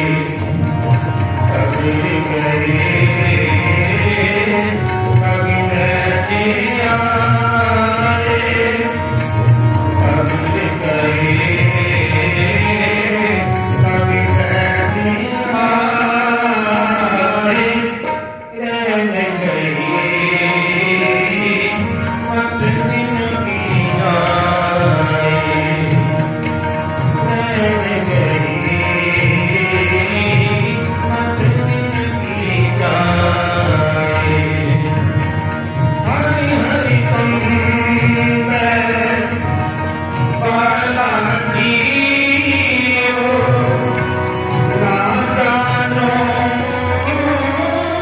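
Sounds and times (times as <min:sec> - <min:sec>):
harmonium melody: 0:00.0 - 0:48.0
tabla playing: 0:00.0 - 0:48.0.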